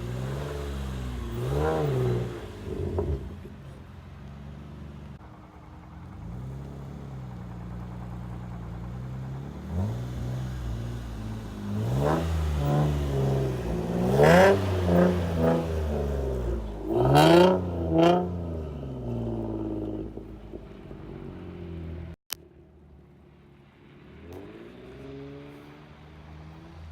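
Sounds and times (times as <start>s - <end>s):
car engine revving hard: 0.0s - 3.5s, 9.6s - 20.3s.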